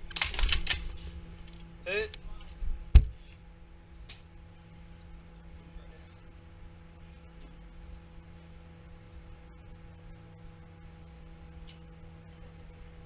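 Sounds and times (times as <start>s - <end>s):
low rumbling noise: 0.0s - 13.0s
steady electrical hum: 0.0s - 13.0s.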